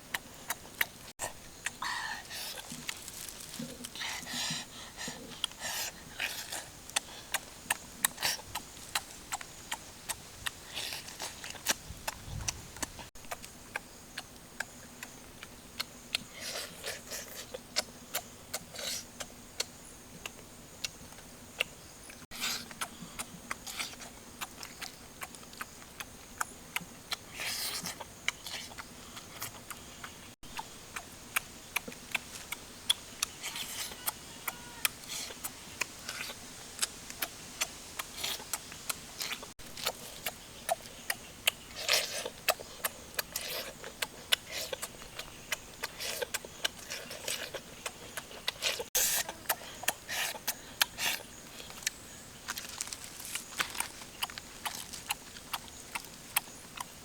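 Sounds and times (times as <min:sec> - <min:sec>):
chewing clicks and smacks: 0:00.1 - 0:01.0, 0:06.2 - 0:57.0
rustling: 0:02.2 - 0:04.3, 0:51.6 - 0:56.3.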